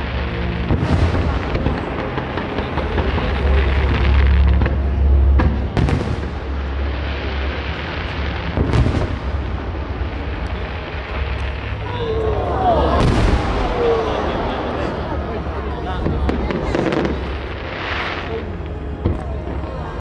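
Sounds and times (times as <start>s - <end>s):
fireworks booming: 0.0s - 20.0s
sharp firework cracks: 12.9s - 14.8s.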